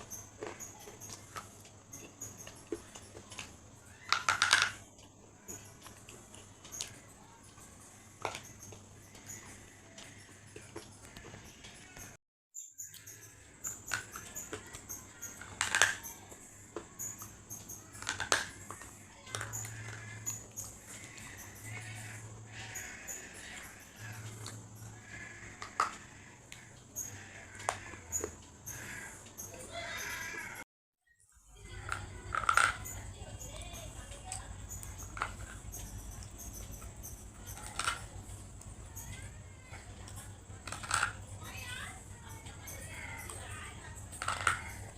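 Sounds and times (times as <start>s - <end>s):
crunchy food being chewed: 0.0s - 12.2s, 12.8s - 30.4s.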